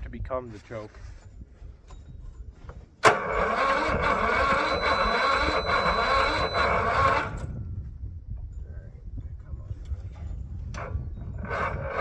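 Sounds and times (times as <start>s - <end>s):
electric starter cranking engine: 3.0s - 7.5s.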